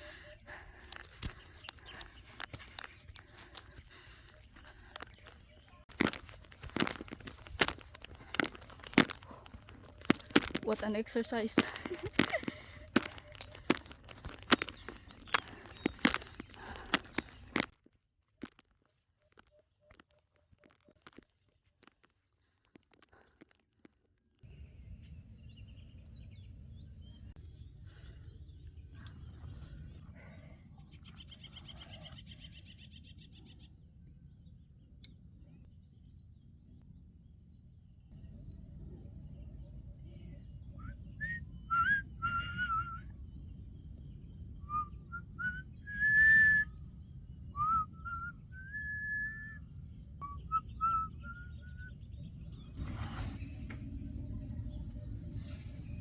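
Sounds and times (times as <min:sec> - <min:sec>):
insects droning: 0:00.0 - 0:56.0
bird whistling: 0:40.8 - 0:43.1, 0:44.6 - 0:46.8, 0:47.6 - 0:49.6, 0:50.2 - 0:52.0.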